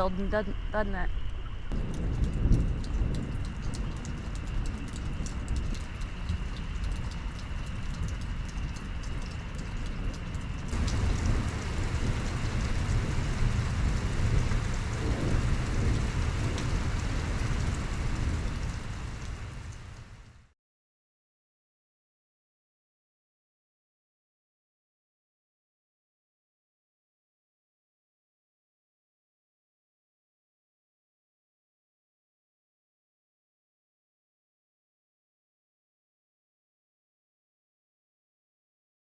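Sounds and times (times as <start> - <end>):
low thunder rumble: 1.7 - 20.5
rain falling: 1.7 - 20.5.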